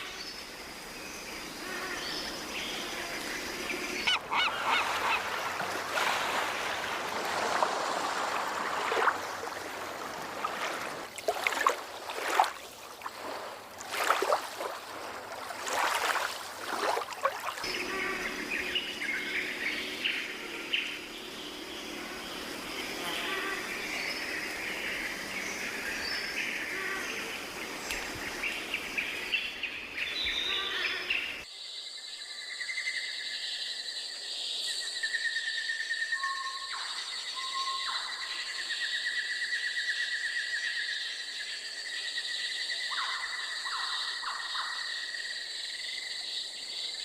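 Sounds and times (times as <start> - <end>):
insect buzzing: 17.6 - 29.4.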